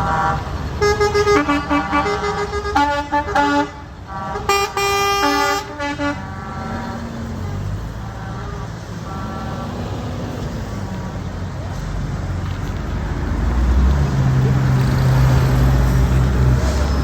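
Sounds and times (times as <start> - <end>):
truck air horn blasts: 0.0 - 9.8
low vehicle rumble: 0.0 - 17.0.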